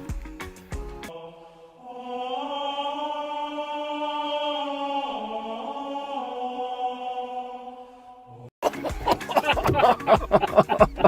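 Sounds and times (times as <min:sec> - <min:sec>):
choir-like voices holding note: 0:01.1 - 0:08.5.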